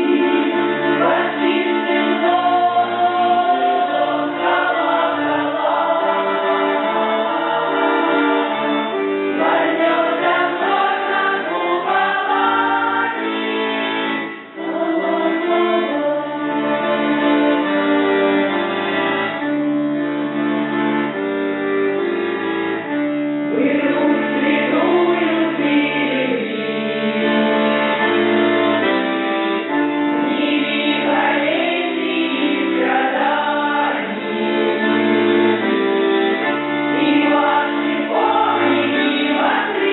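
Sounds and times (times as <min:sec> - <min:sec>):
folk choir singing: 0:00.0 - 0:17.8, 0:23.5 - 0:28.0, 0:29.8 - 0:39.9.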